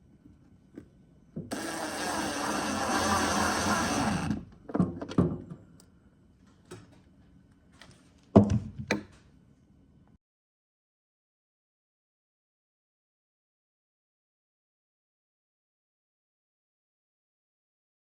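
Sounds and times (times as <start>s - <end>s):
wooden knocks and thunks: 4.2s - 5.6s, 8.3s - 9.1s.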